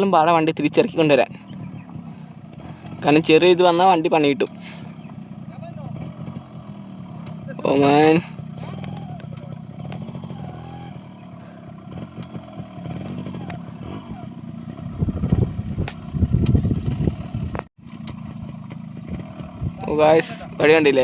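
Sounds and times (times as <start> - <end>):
motorcycle engine running: 0.0 - 21.0
clatter: 11.9 - 14.0.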